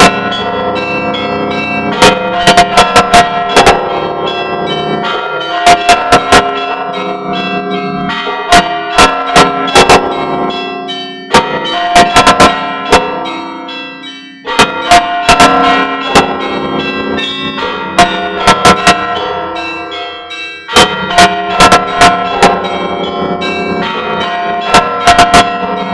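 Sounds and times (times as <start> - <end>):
large bells ringing: 0.0 - 25.9
small church bells striking: 0.0 - 25.9.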